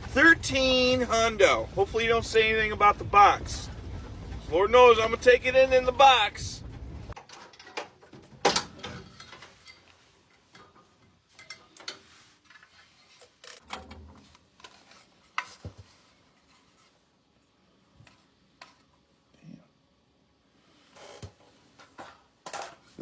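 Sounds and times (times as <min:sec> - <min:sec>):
tools and metal parts rattling: 0:07.2 - 0:14.8.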